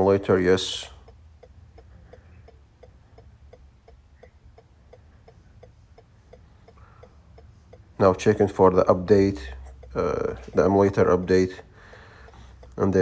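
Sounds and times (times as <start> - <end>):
hazard-light flasher ticking: 0.9 - 13.0.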